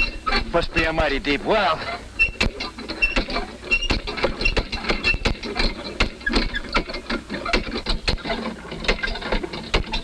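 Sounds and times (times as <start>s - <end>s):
hand pump clanking and squeaking: 0.0s - 0.8s, 1.5s - 10.0s.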